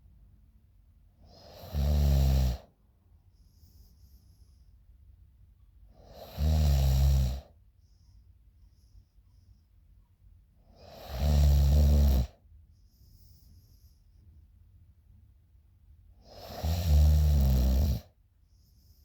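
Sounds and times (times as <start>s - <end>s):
woman snoring: 1.3s - 2.7s, 6.0s - 7.5s, 10.8s - 12.4s, 16.2s - 18.1s
faint breathing: 3.2s - 5.0s, 7.4s - 9.9s, 12.7s - 14.4s, 18.4s - 19.0s.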